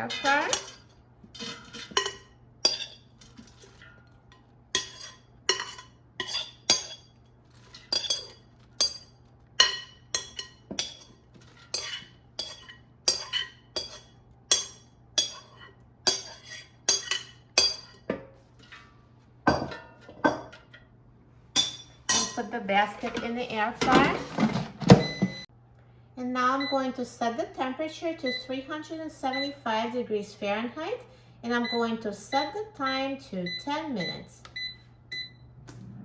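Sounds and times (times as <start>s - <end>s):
metal utensil scraping a dish: 0.0s - 19.0s.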